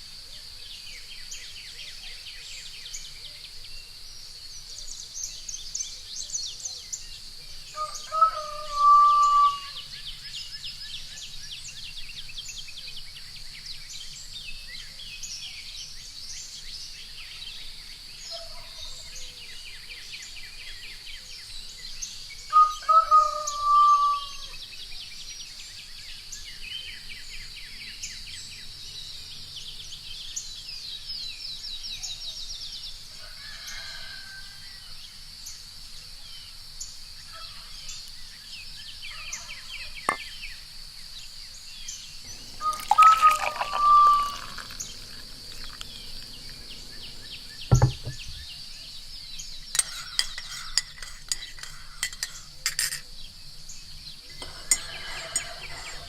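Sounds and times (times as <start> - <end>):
crickets droning: 0.0 - 56.0
rooster crowing: 7.8 - 9.8, 33.3 - 34.8, 42.5 - 45.0, 54.4 - 56.0
birds chirping: 41.8 - 51.4
teaspoon clinking against cup: 42.6 - 46.2, 49.8 - 53.0
china clinking: 42.6 - 46.3.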